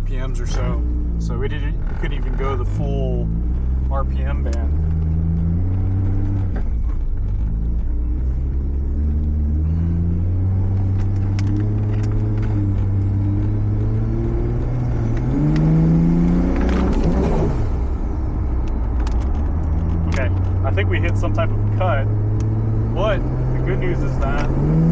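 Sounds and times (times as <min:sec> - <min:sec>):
car engine revving inside cabin: 0:00.0 - 0:24.9.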